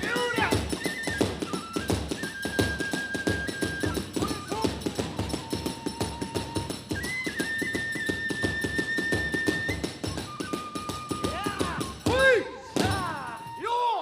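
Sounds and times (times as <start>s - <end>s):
bamboo flute long high notes: 0.0s - 14.0s
hand cymbal beats: 9.9s - 13.8s.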